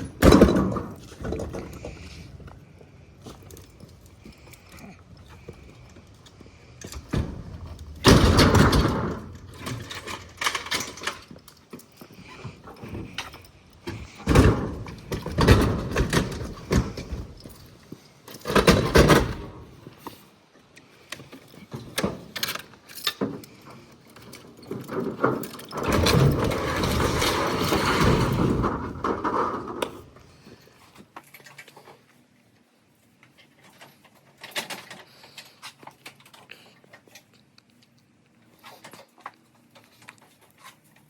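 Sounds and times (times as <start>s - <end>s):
knocks and clunks: 0.0s - 2.6s, 3.3s - 11.4s, 12.7s - 17.6s, 18.4s - 19.7s, 24.7s - 30.2s
heavy junk scraping and rattling: 0.0s - 19.9s, 21.6s - 30.6s.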